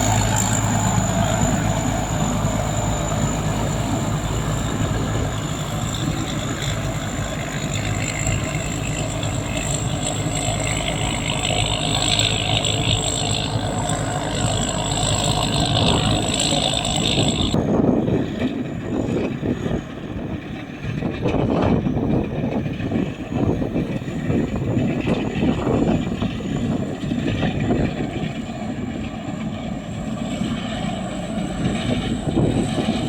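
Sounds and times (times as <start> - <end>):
high whine: 0.0 - 20.3
harvester engine running: 0.0 - 33.0.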